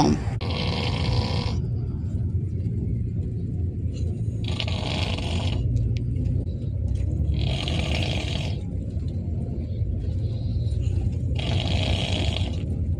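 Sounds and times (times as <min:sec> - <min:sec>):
steady low rumble: 0:00.0 - 0:12.9
harsh rasping snore: 0:00.4 - 0:01.6, 0:04.4 - 0:05.7, 0:07.3 - 0:08.6, 0:11.4 - 0:12.6.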